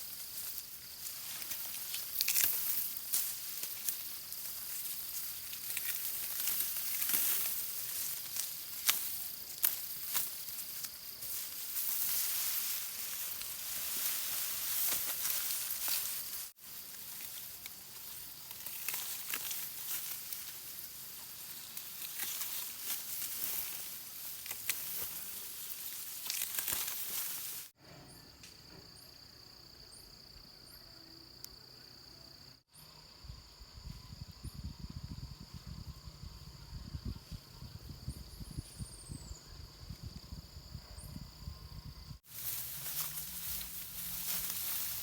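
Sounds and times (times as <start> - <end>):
dry rice stalks rustling: 0.0 - 27.7, 42.2 - 45.0
stalks crackling and snapping: 0.4 - 27.7.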